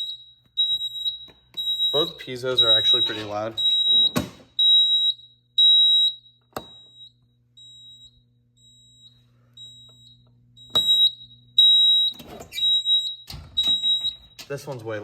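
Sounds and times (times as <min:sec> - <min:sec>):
high-pitched alarm beeps: 0:00.0 - 0:14.4.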